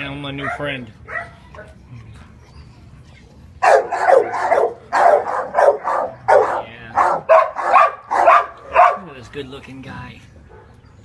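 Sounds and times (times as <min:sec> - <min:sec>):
dogs barking: 0:00.2 - 0:01.8, 0:03.6 - 0:09.2, 0:10.4 - 0:11.0.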